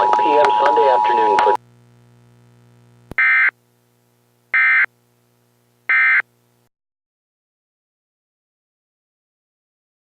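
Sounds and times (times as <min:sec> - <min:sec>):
faint steady hum: 0:00.0 - 0:06.7
short data tones: 0:03.2 - 0:03.6, 0:04.6 - 0:04.9, 0:05.9 - 0:06.2.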